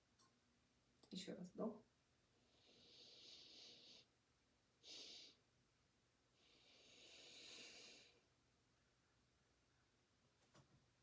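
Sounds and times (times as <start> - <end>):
woman breathing quietly: 2.4 - 4.2, 4.8 - 5.5, 6.3 - 8.4.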